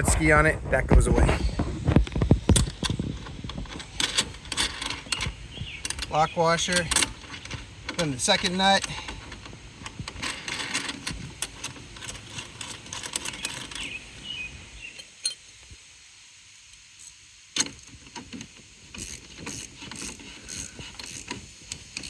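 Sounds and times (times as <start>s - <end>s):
metal hardware clicking and clinking: 2.2s - 14.0s.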